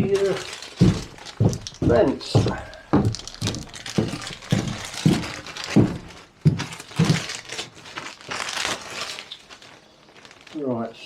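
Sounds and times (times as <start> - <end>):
plastic crinkling: 0.0 - 11.0
soft knocks: 0.3 - 7.3.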